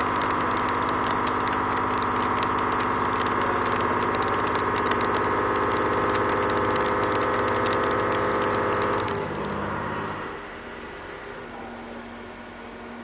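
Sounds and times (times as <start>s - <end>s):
sharp ticks of metal chips: 0.0s - 9.6s
milling cutter tone: 0.0s - 9.7s.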